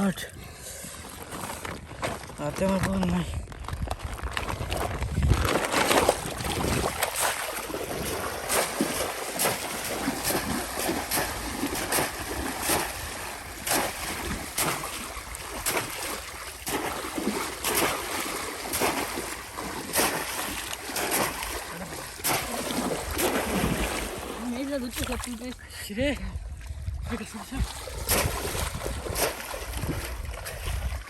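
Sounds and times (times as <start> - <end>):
people wading in river water: 5.3 - 31.0
steady wash of water: 5.7 - 25.6, 27.2 - 31.0.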